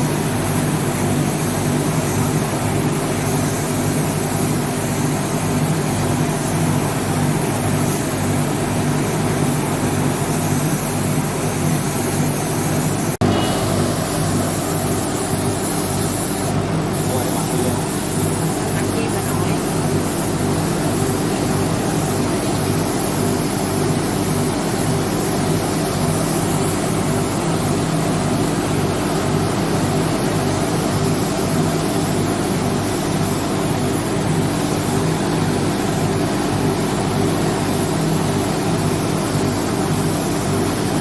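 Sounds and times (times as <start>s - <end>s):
motor running: 6.4s - 24.8s.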